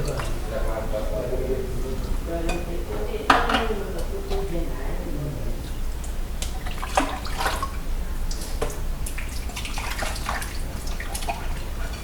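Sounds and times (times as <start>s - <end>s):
water splashing and dripping: 0.0s - 0.6s, 6.0s - 12.0s
dishes knocking: 1.9s - 4.5s.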